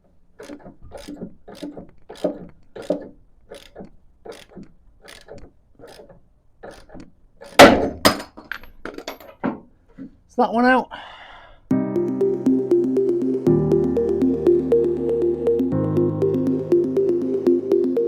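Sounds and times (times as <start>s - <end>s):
spanner clicking strokes: 0.4s - 7.6s
loud metal crack and knock: 6.6s - 9.7s.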